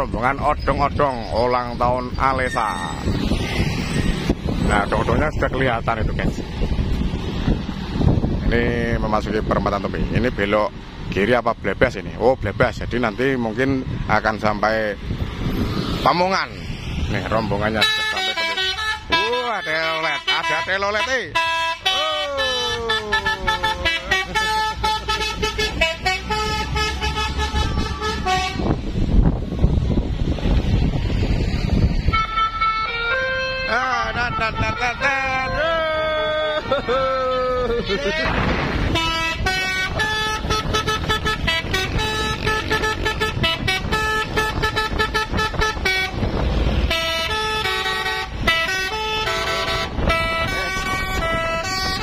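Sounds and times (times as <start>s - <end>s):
vehicle rumble: 0.0s - 52.0s
musical horn playing a tune: 17.8s - 28.7s, 32.1s - 35.6s, 38.9s - 46.2s, 46.8s - 52.0s.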